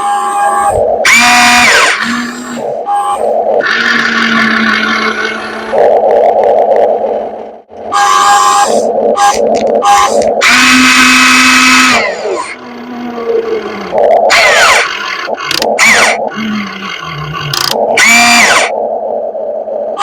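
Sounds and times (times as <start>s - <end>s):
electric motors and pump whining: 10.5s - 18.7s
control clicks: 15.3s - 15.9s, 17.4s - 17.8s.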